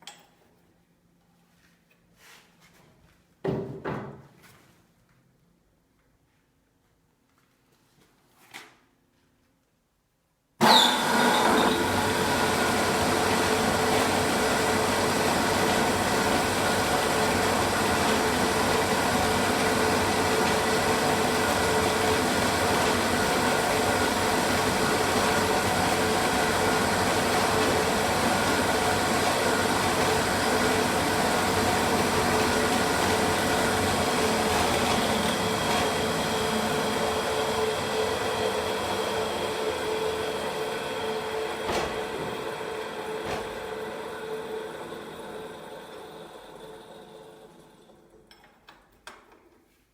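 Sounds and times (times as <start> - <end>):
saw sharpening machine running: 10.6 - 48.2.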